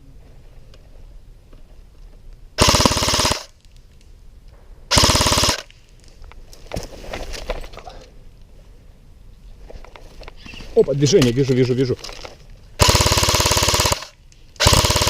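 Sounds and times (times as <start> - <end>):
airsoft rifle full-auto bursts: 2.6 - 3.5, 4.9 - 5.7, 12.8 - 15.0.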